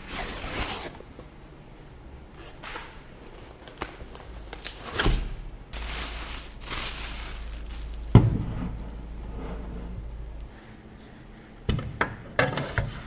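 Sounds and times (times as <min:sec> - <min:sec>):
rustling and scraping: 0:05.8 - 0:11.3.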